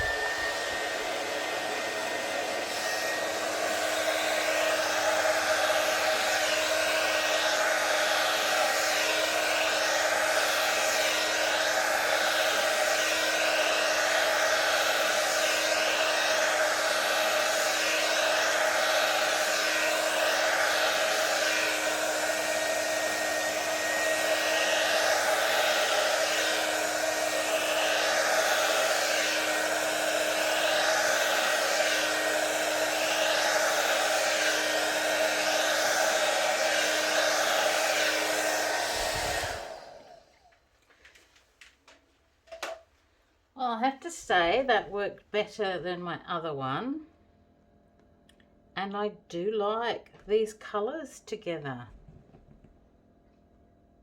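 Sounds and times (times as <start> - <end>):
hair dryer running: 0.0 - 41.2, 42.5 - 42.8.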